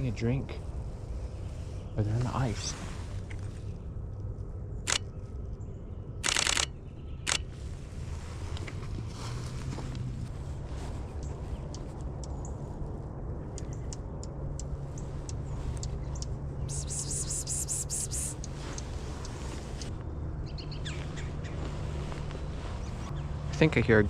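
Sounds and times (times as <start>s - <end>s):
small birds chipping: 10.7s - 24.0s.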